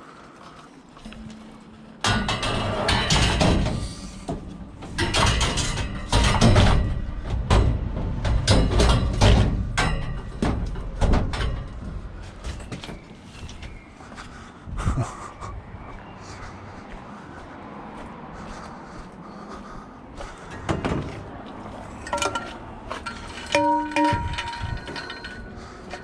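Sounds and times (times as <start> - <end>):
scrap metal clanging: 2.0 - 12.8, 21.8 - 26.0.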